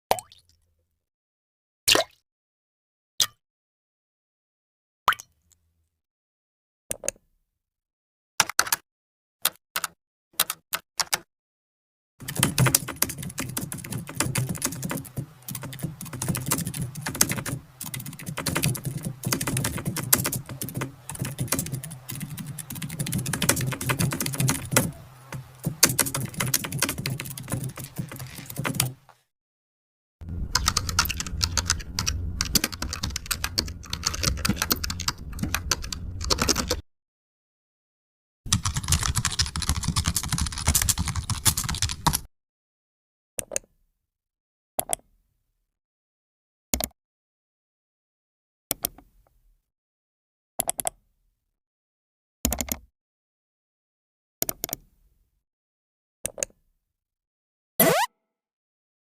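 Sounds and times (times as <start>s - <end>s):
fast typing on keyboard: 12.2s - 29.1s, 30.2s - 36.8s, 38.5s - 42.3s.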